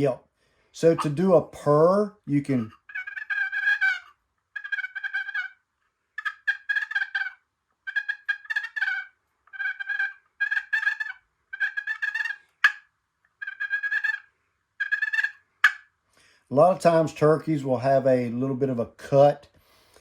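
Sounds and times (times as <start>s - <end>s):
turkey call purrs: 0.8s - 1.2s, 2.5s - 5.6s, 6.2s - 15.9s.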